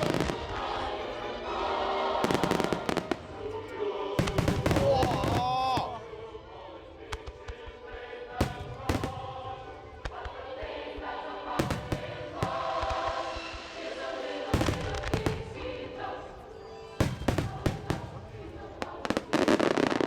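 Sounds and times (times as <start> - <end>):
fireworks bursting with sharp bangs: 0.0 - 0.9, 2.2 - 6.1, 7.0 - 20.0
show music with choral singing: 0.0 - 20.0.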